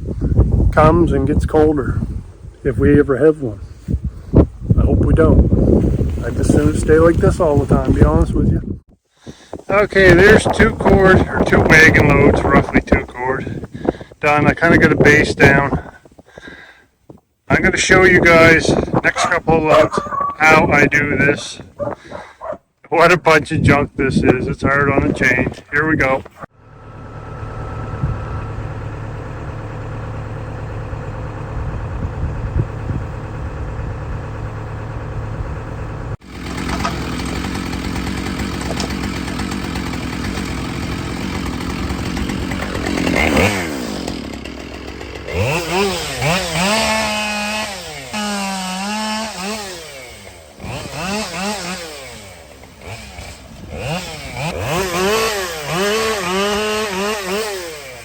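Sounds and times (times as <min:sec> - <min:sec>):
chainsaw engine humming: 0:03.6 - 0:08.4, 0:09.2 - 0:22.8, 0:24.0 - 0:58.0
chainsaw cutting at full throttle: 0:09.9 - 0:14.1, 0:18.2 - 0:22.6, 0:36.2 - 0:58.0.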